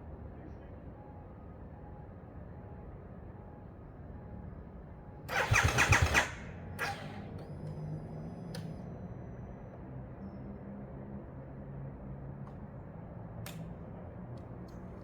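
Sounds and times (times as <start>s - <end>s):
motorcycle starter cranking: 5.3s - 7.7s.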